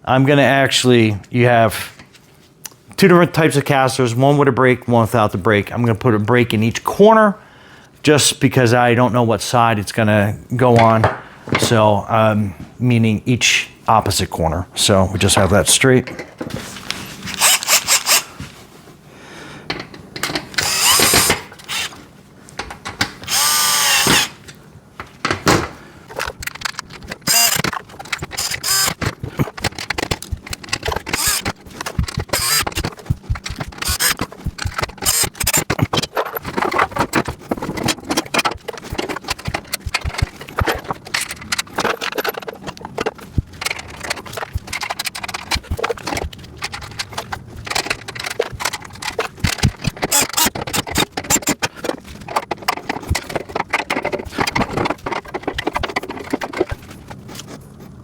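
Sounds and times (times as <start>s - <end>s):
power drill driving bolts: 17.3s - 18.3s, 20.3s - 22.0s, 23.0s - 24.4s, 26.2s - 42.8s, 43.6s - 51.8s
small metal clicks and rattles: 26.1s - 57.5s.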